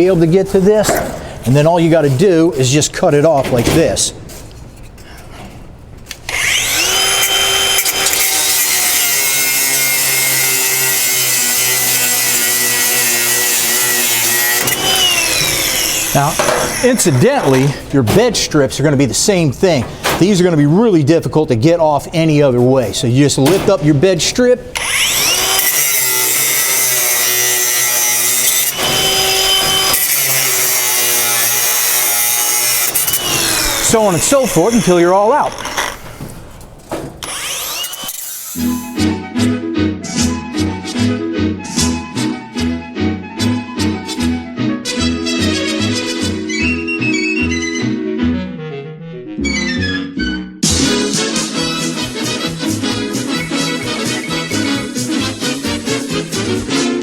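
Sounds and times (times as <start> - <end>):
angle grinder cutting bolt: 6.1 - 17.8, 24.8 - 39.0.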